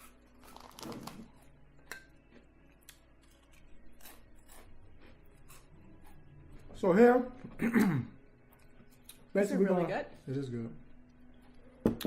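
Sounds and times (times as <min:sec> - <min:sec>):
chewing: 0:01.9 - 0:06.3.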